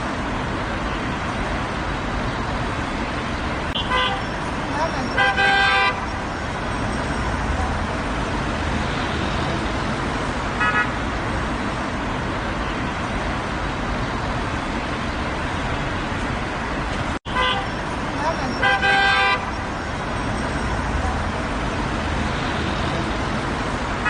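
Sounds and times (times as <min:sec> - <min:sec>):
road traffic roar: 0:00.0 - 0:24.0
car horn toot: 0:03.8 - 0:04.3, 0:05.0 - 0:06.1, 0:10.6 - 0:11.0, 0:17.3 - 0:17.8, 0:18.5 - 0:19.6.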